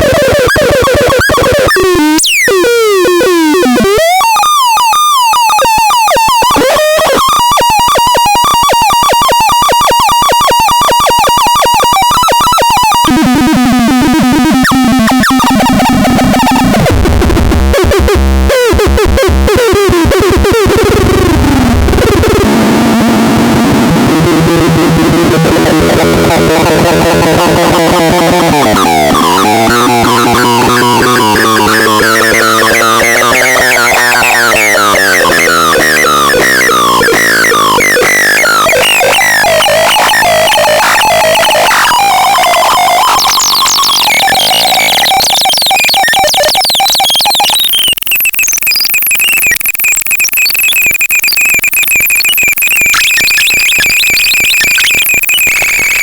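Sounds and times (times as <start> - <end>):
warbling electronic chirps: 20.5 - 56.0.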